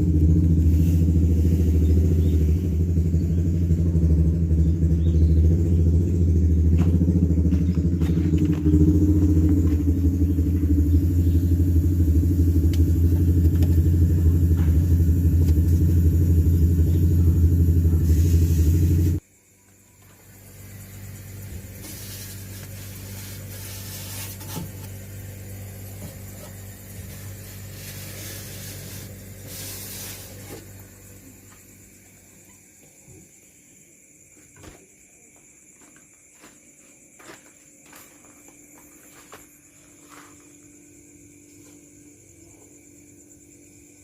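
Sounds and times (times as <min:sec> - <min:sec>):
motor humming: 0:04.6 - 0:19.2.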